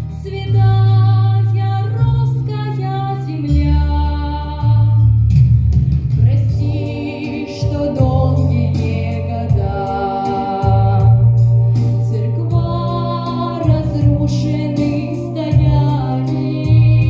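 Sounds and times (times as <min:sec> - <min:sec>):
sustained bass notes: 0:00.0 - 0:17.0
person singing: 0:06.5 - 0:17.0.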